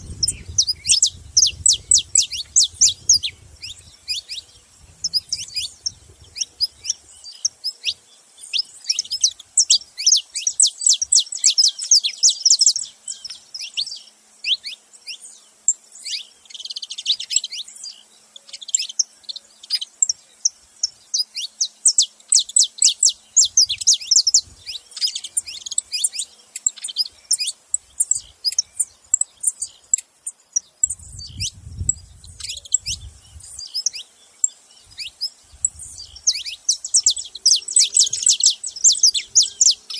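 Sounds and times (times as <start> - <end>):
low rumble: 0.0 - 1.6
finch chirping: 0.0 - 39.9.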